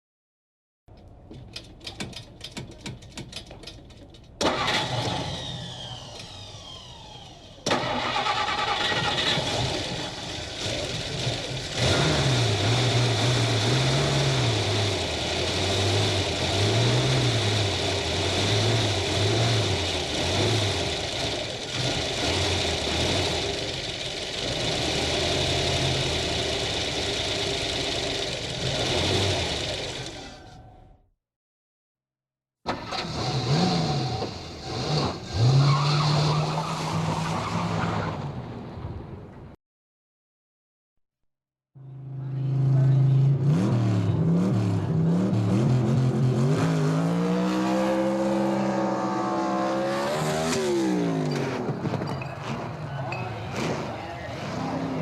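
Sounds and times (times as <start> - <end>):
car engine cranking: 0.9 - 30.7, 32.7 - 36.3, 47.1 - 55.0
car engine revving: 4.4 - 30.4, 32.7 - 37.8, 42.5 - 55.0.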